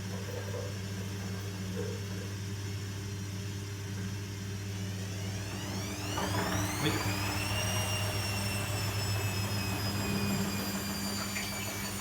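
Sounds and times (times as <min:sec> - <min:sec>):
washing machine humming: 0:05.0 - 0:12.0.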